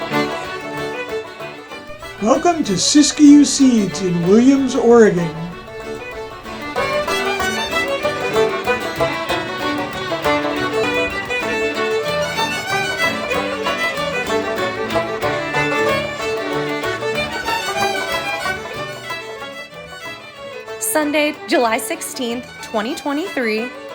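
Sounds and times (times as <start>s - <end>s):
celtic fiddle music: 0.0s - 23.9s.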